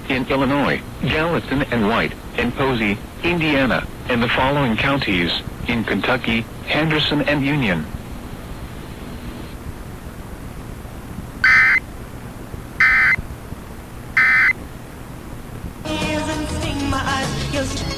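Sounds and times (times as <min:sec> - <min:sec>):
faint broadcast hiss: 0:00.0 - 0:17.9
digital data tone bursts: 0:11.4 - 0:11.8, 0:12.8 - 0:13.2, 0:14.2 - 0:14.6.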